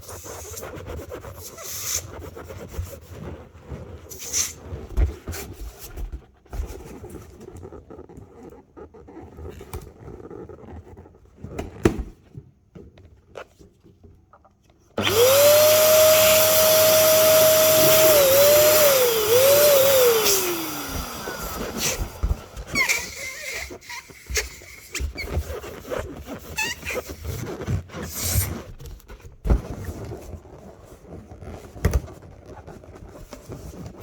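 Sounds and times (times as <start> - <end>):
electric air blower whining: 15.0 - 23.6.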